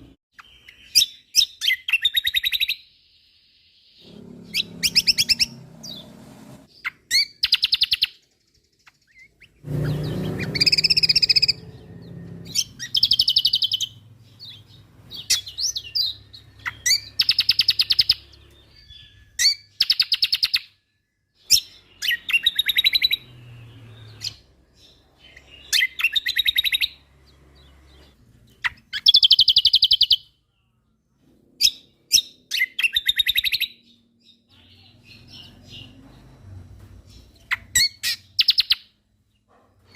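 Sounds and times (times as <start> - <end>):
songbird trilling: 4.5 - 6.0, 8.9 - 20.7
low rumble: 10.0 - 13.3.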